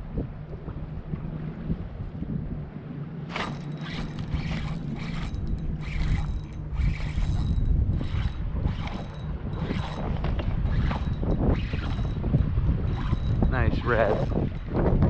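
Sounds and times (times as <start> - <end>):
fishing reel ratcheting clicks: 3.3 - 14.8.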